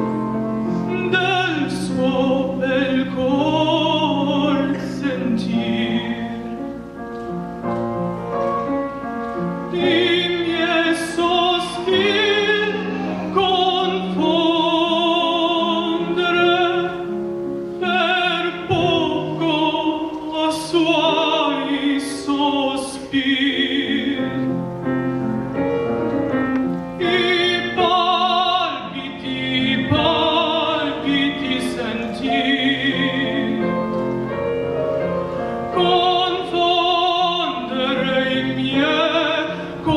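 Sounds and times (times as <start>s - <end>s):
instrumental accompaniment: 0.0s - 39.9s
operatic singing voice: 0.9s - 6.6s, 9.7s - 17.2s, 17.8s - 24.6s, 27.0s - 33.9s, 35.7s - 39.9s.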